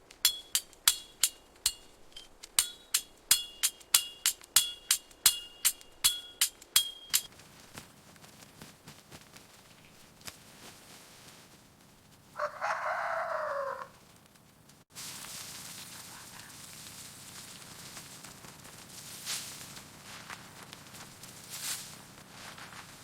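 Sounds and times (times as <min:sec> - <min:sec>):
ringing metallic clinks: 0:00.2 - 0:07.3
rooster crowing: 0:12.4 - 0:14.0.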